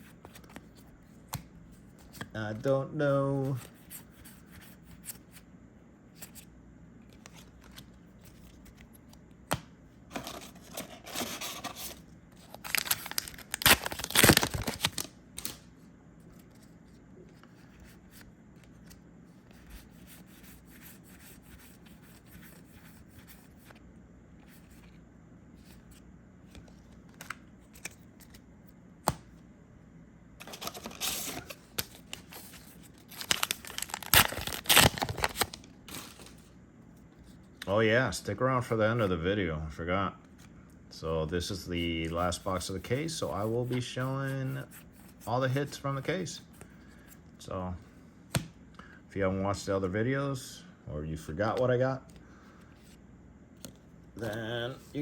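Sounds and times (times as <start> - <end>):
wrappers tearing and crinkling: 12.5 - 15.6, 30.4 - 36.4.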